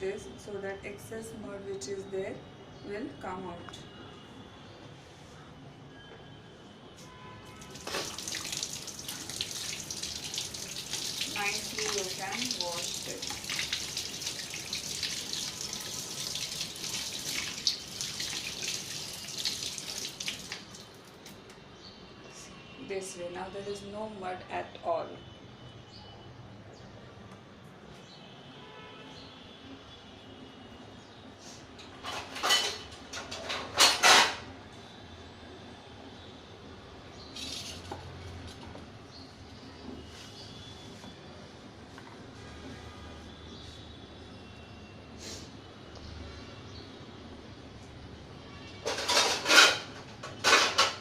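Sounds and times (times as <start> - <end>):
water splashing: 7.5 - 21.2
tap water running into sink: 7.6 - 21.3
kitchenware scraping and clattering: 31.9 - 34.5, 37.4 - 38.1, 48.8 - 51.0.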